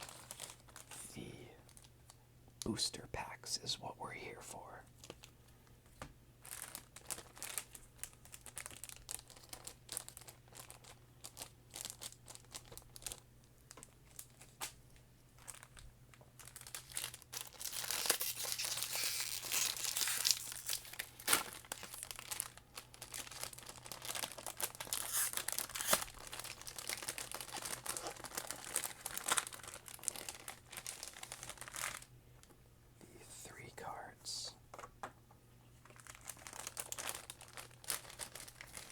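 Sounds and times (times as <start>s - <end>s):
plastic packaging crinkling: 0.0s - 2.2s, 6.4s - 32.5s, 35.8s - 38.9s.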